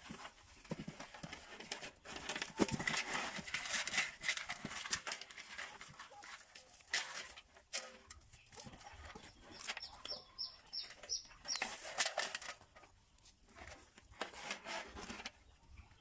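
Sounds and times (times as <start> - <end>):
rustling and knocking: 0.0 - 10.0
bird chirping: 8.3 - 11.8.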